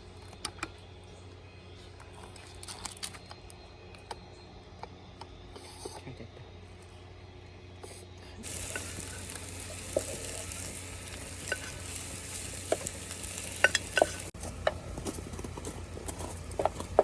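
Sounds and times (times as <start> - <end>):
food sizzling in a pan: 8.4 - 14.4.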